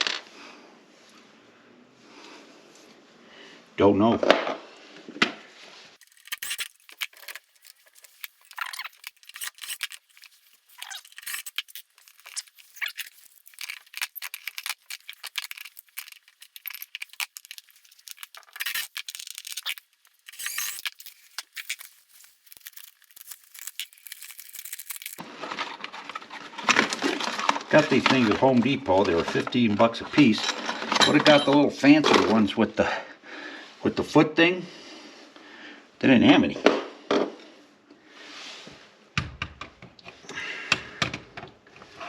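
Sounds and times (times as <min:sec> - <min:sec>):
packaging crinkling and tearing: 0:06.0 - 0:29.6.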